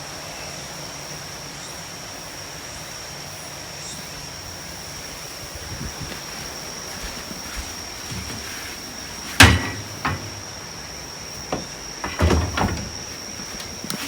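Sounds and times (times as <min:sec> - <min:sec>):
soft low knocks: 0:07.0 - 0:13.9.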